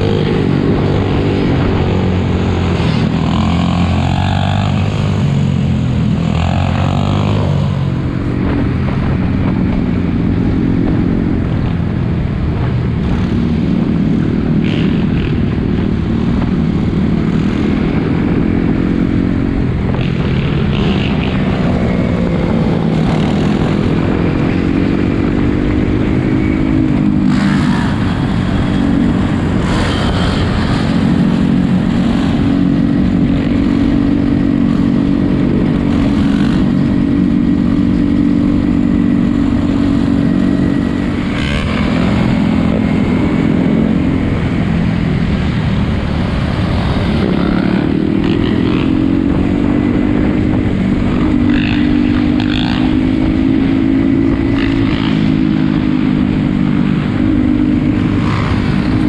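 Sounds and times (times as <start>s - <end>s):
small motorcycle engine running: 12.6s - 59.0s.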